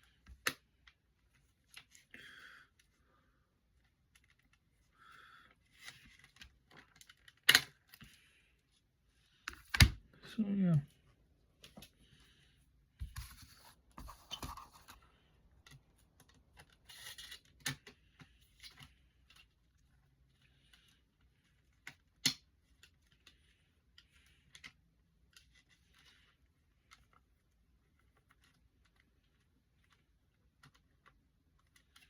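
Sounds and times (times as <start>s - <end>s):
rustling and scraping of items: 10.8s - 22.0s.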